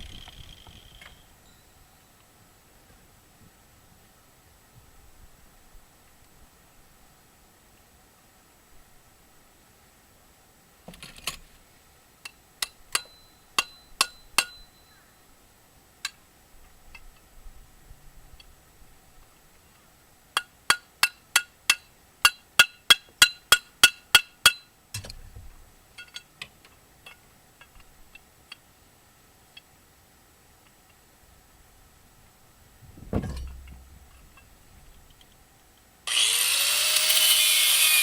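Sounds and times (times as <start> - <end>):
heavy metal clunk: 32.9 - 34.4.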